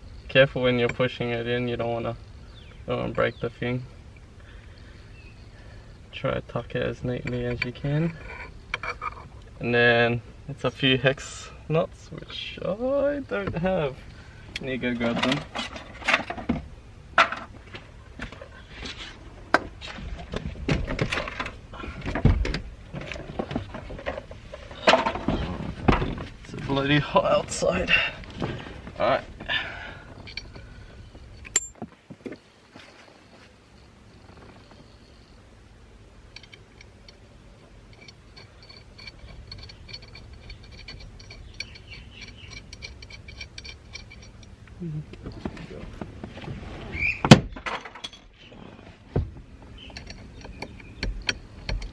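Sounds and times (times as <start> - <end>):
low background rumble: 0.0 - 51.9
knocks and clunks of handling: 14.5 - 33.0, 37.9 - 51.9
metal hardware clicking and jingling: 14.6 - 16.5, 20.8 - 31.9, 36.3 - 45.8, 47.6 - 48.5, 49.7 - 51.9.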